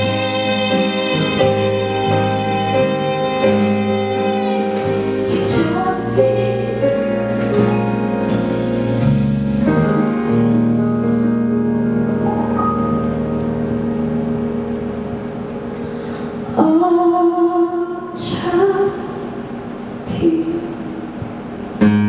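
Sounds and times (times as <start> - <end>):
sustained keyboard chords: 10.8 - 21.9
percussion hits: 12.2 - 15.1.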